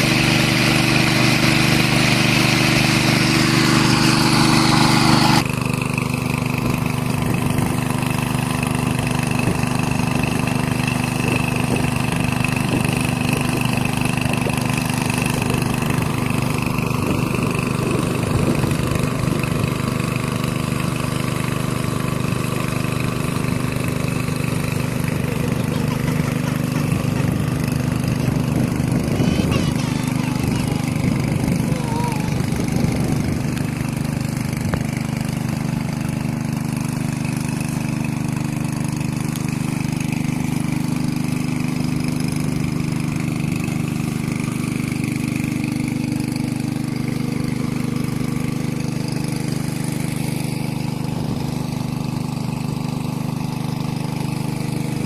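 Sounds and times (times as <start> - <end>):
small engine running: 0.0 - 55.0.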